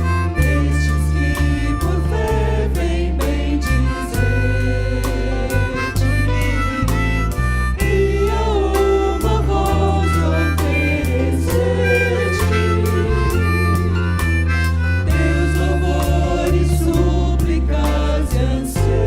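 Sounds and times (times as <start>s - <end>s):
gospel worship music: 0.0s - 19.0s
steady drum beat: 7.8s - 14.0s.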